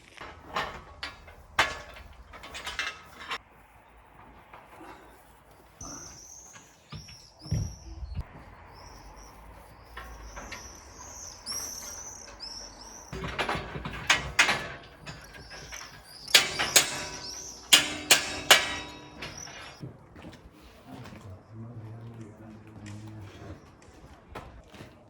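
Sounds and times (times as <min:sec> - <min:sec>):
short high-pitched squeaks: 0:05.2 - 0:19.8
sharp knocks: 0:13.1 - 0:19.8.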